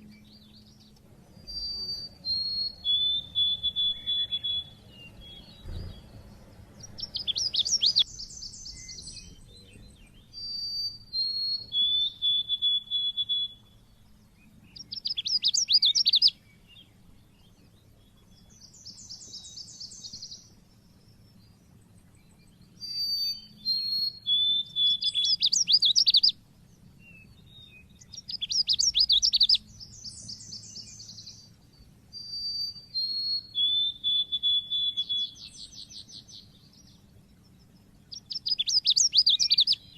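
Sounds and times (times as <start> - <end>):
bird chirping and trilling: 0.0 - 20.6, 21.2 - 26.4, 27.0 - 39.9
bird whistled notes: 1.4 - 6.2, 6.8 - 13.8, 14.8 - 16.4, 22.8 - 26.4, 27.0 - 31.4, 32.1 - 36.4, 38.1 - 39.9.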